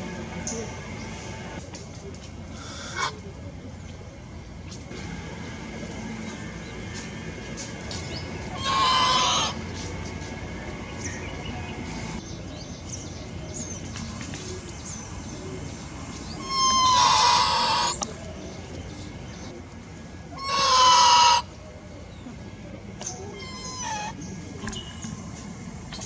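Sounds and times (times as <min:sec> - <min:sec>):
loud animal calls: 0:08.5 - 0:09.7, 0:16.4 - 0:18.0, 0:20.4 - 0:21.6, 0:23.3 - 0:24.2.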